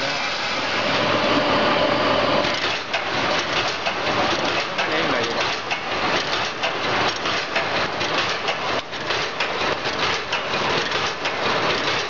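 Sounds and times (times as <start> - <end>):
welding machine clattering: 2.4 - 12.0.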